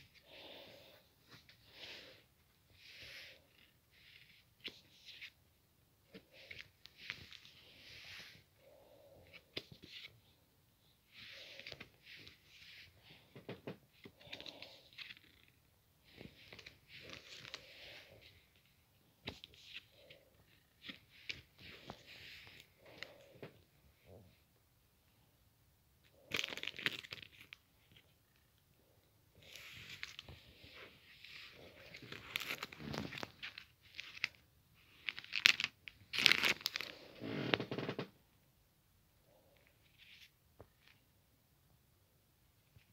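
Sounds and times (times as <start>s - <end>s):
packaging crinkling and rustling: 31.8s - 34.4s, 35.0s - 38.0s.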